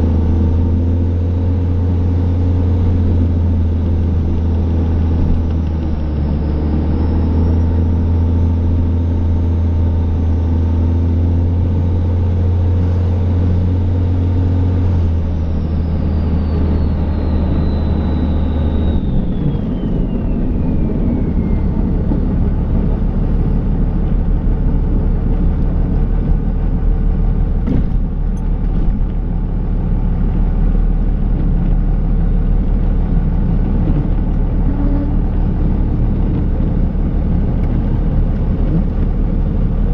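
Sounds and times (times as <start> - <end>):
diesel engine running: 0.0 - 39.9
high whine falling in pitch: 11.5 - 26.6.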